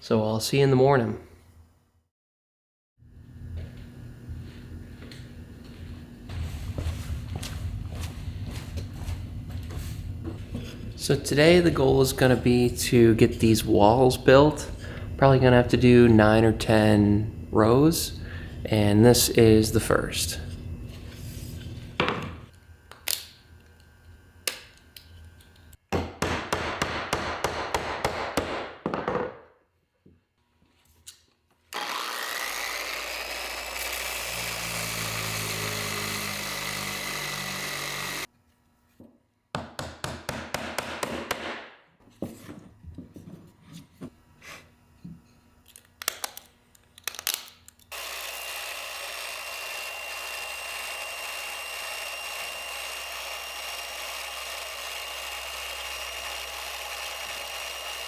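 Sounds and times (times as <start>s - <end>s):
power tool whining: 10.3s - 25.4s, 31.7s - 38.3s, 47.9s - 58.0s
rasping sawing strokes: 31.8s - 38.3s.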